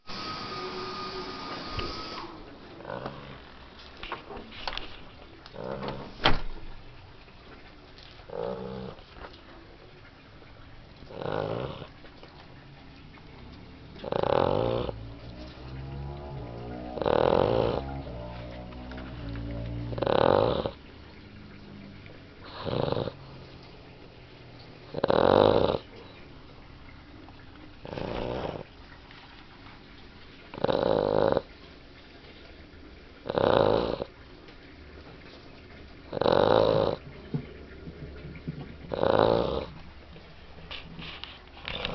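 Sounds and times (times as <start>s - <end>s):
puppy snoring: 0.1s - 3.6s, 8.3s - 9.0s, 11.1s - 11.9s, 14.0s - 20.8s, 22.4s - 23.2s, 24.9s - 25.9s, 27.8s - 28.8s, 30.6s - 31.5s, 33.2s - 34.1s, 36.1s - 37.0s, 38.9s - 39.8s, 41.6s - 41.9s.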